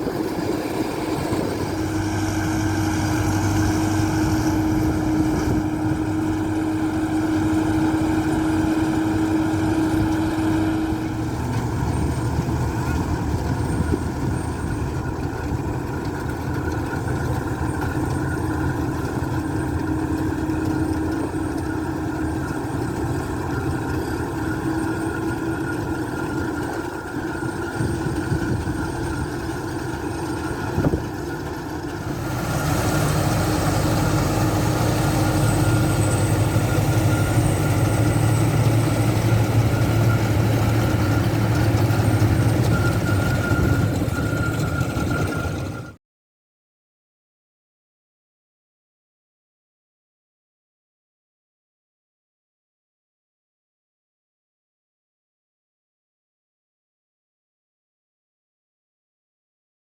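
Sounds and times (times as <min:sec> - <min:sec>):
harvesting machinery: 0:00.0 - 0:46.0
tractor engine running: 0:00.0 - 0:46.0.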